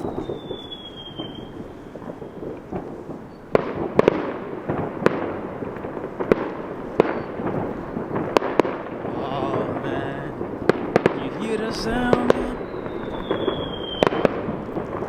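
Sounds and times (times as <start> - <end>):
fireworks bangs: 0.0 - 15.0.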